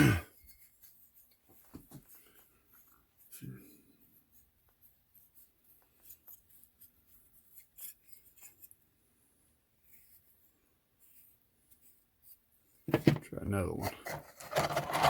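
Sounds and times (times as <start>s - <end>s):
handling clicks and rubbing: 12.9s - 15.0s.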